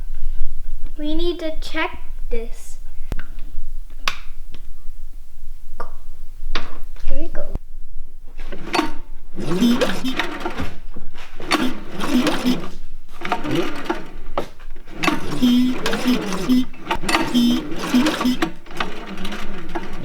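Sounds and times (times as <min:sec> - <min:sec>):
pull-starter cranking engine whirr: 0:08.4 - 0:20.0.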